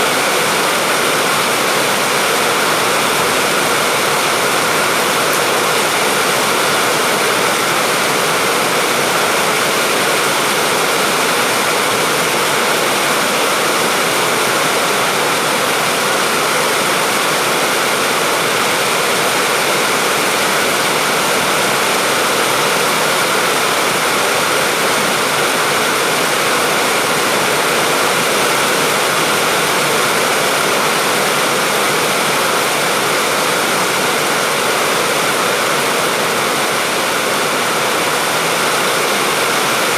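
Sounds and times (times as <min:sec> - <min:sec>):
steady rain hiss: 0:00.0 - 0:39.9.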